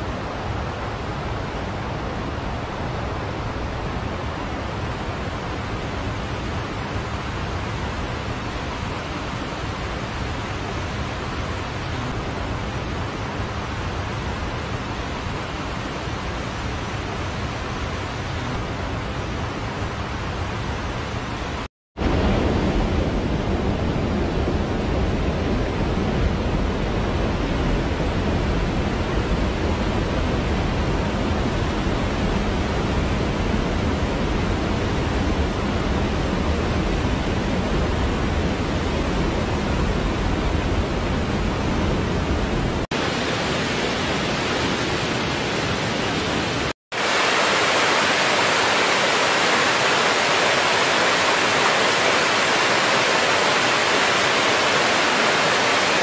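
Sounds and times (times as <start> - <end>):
rushing water: 0.0 - 56.0.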